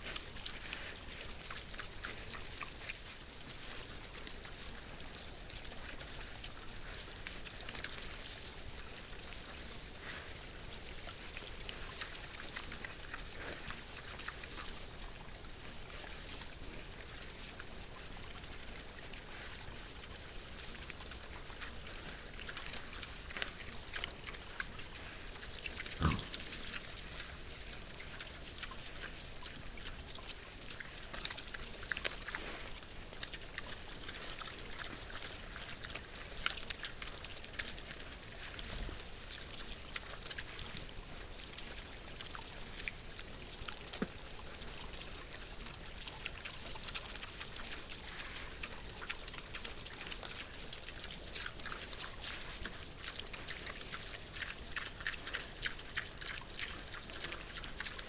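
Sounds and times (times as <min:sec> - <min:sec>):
wild boars grunting: 0:25.0 - 0:26.9.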